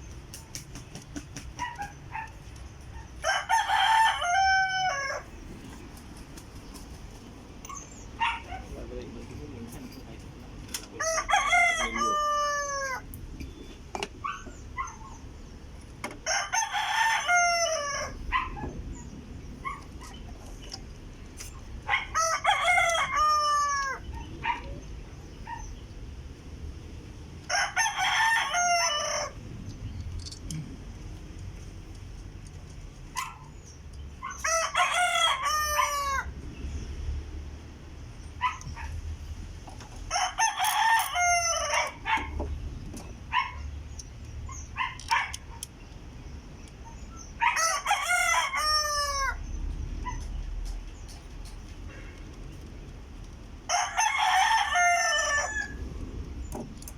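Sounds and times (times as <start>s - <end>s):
rooster crowing: 3.2s - 5.4s, 11.0s - 13.1s, 16.2s - 18.2s, 22.0s - 24.1s, 27.5s - 29.4s, 34.4s - 36.4s, 40.1s - 42.1s, 47.4s - 49.5s, 53.7s - 55.8s.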